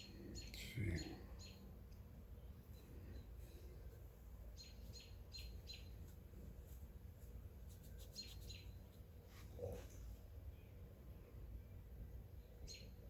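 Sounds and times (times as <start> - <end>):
faint bird chirps: 0.0 - 1.8, 2.4 - 6.2, 7.9 - 9.0, 9.6 - 13.0
low steady hum: 0.0 - 13.0.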